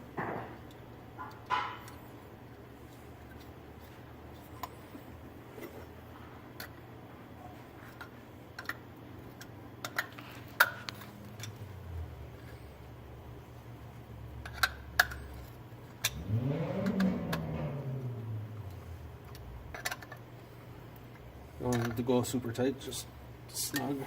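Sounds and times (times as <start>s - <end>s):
low steady hum: 0.0s - 24.0s
humming sound rising and falling: 16.0s - 19.9s.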